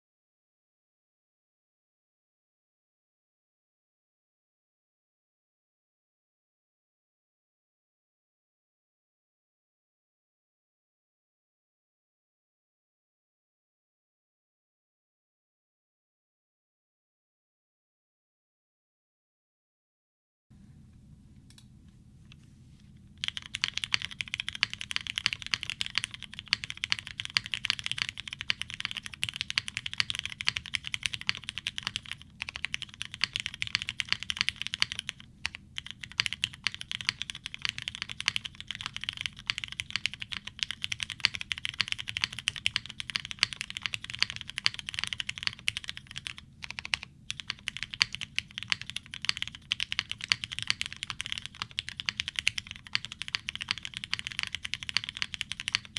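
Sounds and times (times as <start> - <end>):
mechanical keyboard typing: 23.2 - 55.9.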